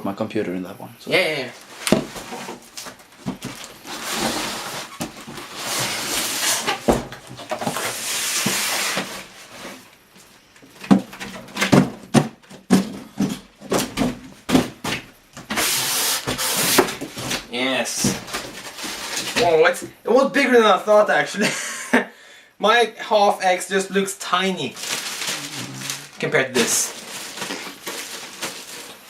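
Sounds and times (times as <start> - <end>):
cardboard and styrofoam scraping: 1.4 - 14.8, 15.4 - 19.6, 24.6 - 29.0
knocks and thumps: 1.8 - 3.7, 6.7 - 7.8, 10.6 - 15.5.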